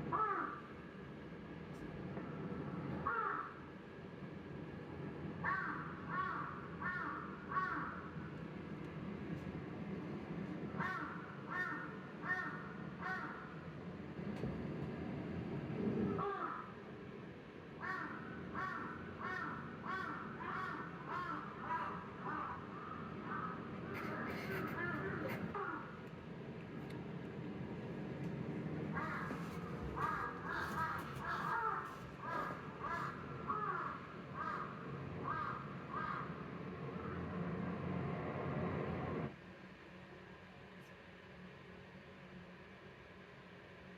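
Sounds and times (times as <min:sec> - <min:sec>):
crow cawing: 0:00.1 - 0:00.7, 0:03.0 - 0:03.6, 0:05.4 - 0:08.1, 0:10.8 - 0:13.6, 0:16.2 - 0:16.8, 0:17.8 - 0:26.0, 0:28.9 - 0:36.4.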